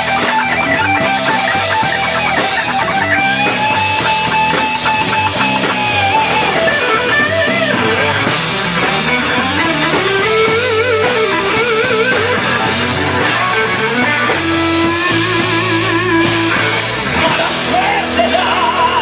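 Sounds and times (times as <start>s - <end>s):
electric guitar bent notes: 0.0s - 19.0s
hard rock band playing: 0.0s - 19.0s.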